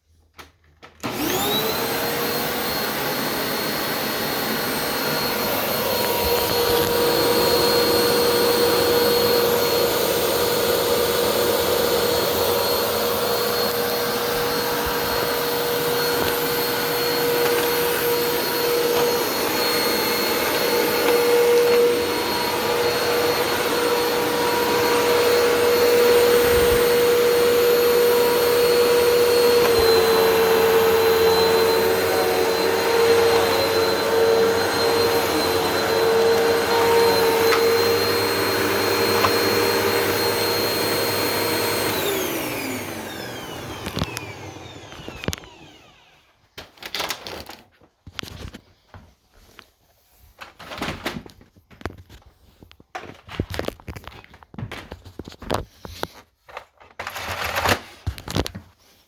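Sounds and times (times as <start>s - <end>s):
vacuum cleaner motor whine: 1.0s - 47.2s.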